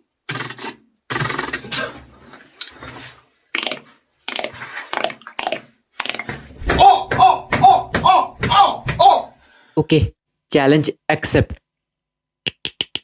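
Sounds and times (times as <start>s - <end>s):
mouth clicking sound effects: 3.5s - 6.3s, 12.4s - 13.0s.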